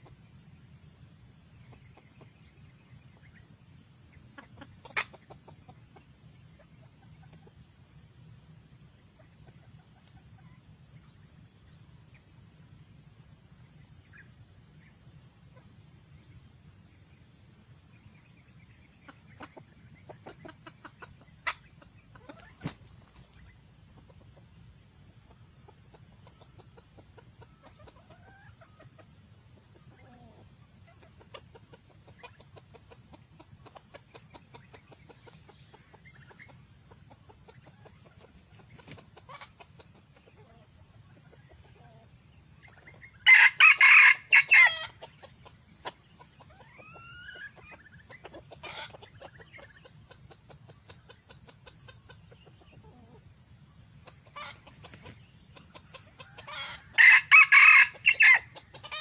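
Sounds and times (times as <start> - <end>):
faint clucks: 4.1 - 7.7, 18.2 - 43.2, 44.8 - 53.4, 54.0 - 57.0
rooster crowing: 43.2 - 45.0, 56.2 - 59.0.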